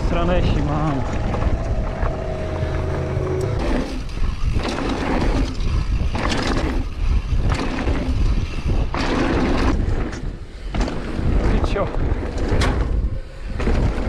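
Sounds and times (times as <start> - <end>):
wind rushing over microphone: 0.0 - 4.8
bike rattling over bumps: 3.8 - 14.0.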